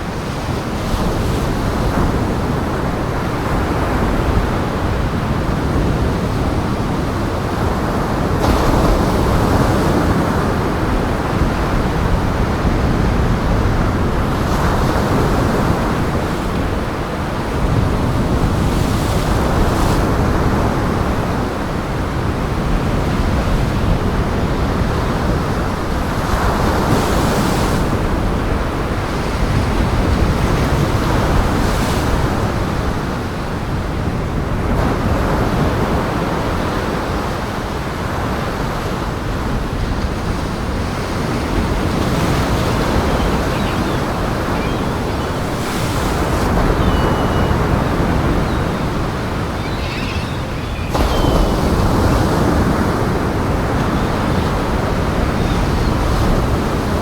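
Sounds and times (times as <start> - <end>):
strong wind: 0.0 - 57.0
waves breaking: 34.7 - 57.0.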